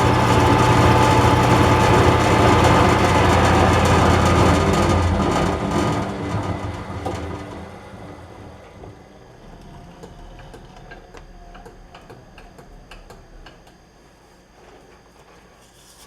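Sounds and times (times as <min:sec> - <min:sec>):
metal lathe running down: 0:00.0 - 0:13.8.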